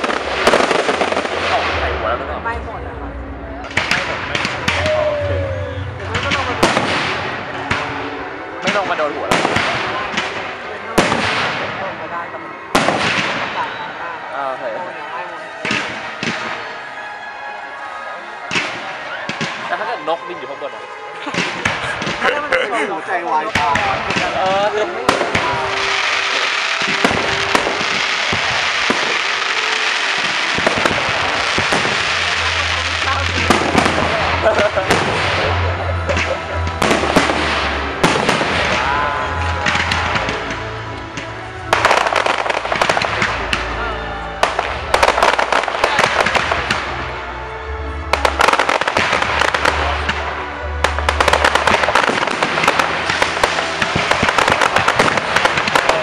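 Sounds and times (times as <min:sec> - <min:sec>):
fireworks crackling hiss: 0:00.0 - 0:02.6, 0:21.2 - 0:47.0, 0:48.2 - 0:56.0
fireworks bangs: 0:00.0 - 0:16.9, 0:18.4 - 0:20.5, 0:21.2 - 0:22.6, 0:23.4 - 0:47.2, 0:48.0 - 0:56.0
background music: 0:00.0 - 0:56.0.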